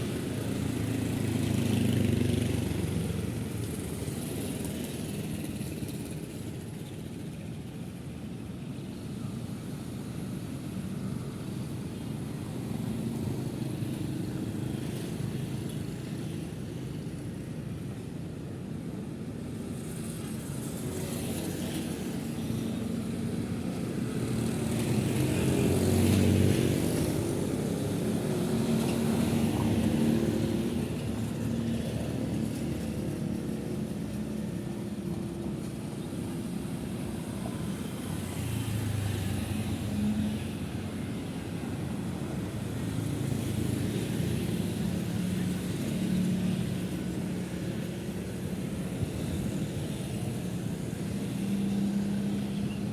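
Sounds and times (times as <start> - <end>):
cars and motorcycles passing: 0.0 - 52.9
loud vehicle passing: 24.0 - 34.7.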